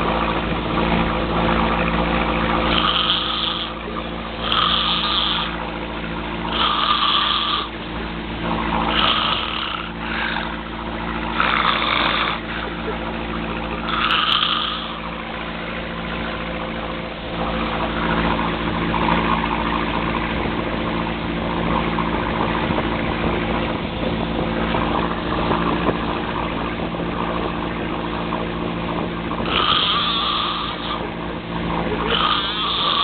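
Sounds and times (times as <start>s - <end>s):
engine droning: 0.0s - 33.0s
heavy snoring: 2.6s - 5.7s, 6.4s - 7.8s, 8.5s - 12.9s, 13.8s - 15.2s, 29.4s - 31.2s, 32.0s - 33.0s.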